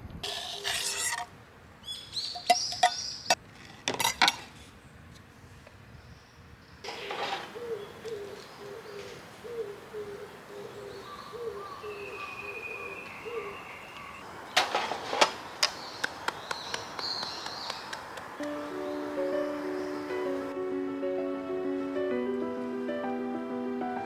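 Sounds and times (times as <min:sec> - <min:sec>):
bird hooting: 0:07.5 - 0:14.3, 0:16.4 - 0:20.6
bird whistling: 0:11.0 - 0:14.2, 0:15.8 - 0:20.5.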